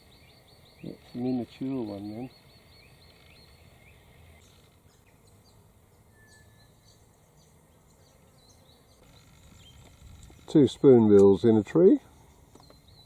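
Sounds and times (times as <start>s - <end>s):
distant bird chirps: 0.0s - 13.0s.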